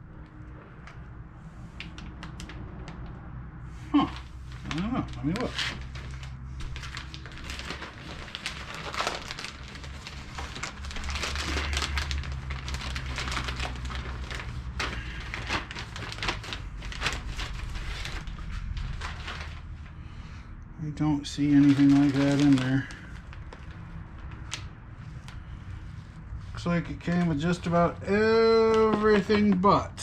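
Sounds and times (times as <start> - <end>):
rustling and crinkling of packaging: 1.6 - 20.0, 21.2 - 30.0.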